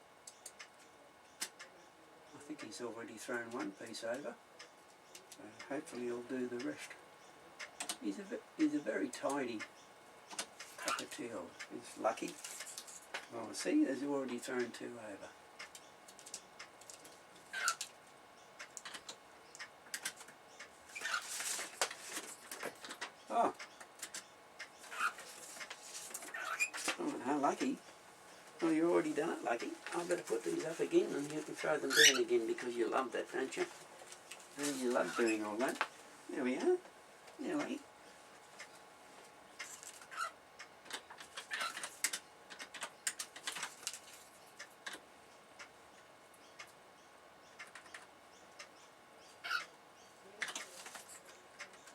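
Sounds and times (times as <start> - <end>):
cockatiel call: 17.5 - 17.8, 24.8 - 25.3, 31.9 - 32.3, 49.4 - 49.7.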